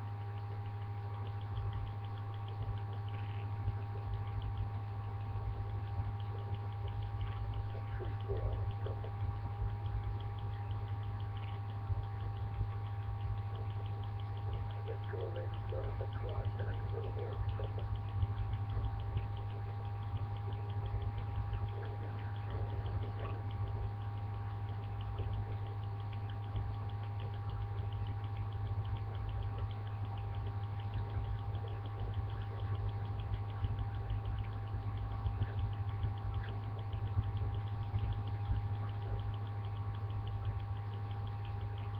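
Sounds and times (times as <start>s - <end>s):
steady low hum: 0.0s - 41.9s.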